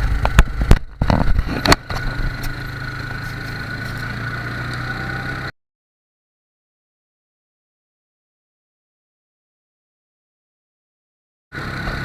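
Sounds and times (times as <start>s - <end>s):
atv engine running: 0.0s - 5.6s, 11.6s - 12.0s.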